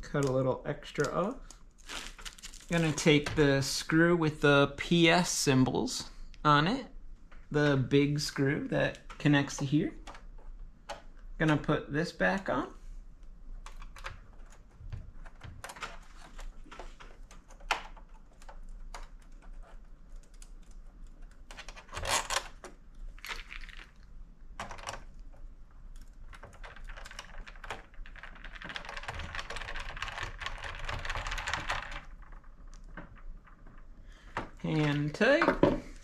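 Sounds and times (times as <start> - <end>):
plastic parts clicking and knocking: 13.6 - 36.0.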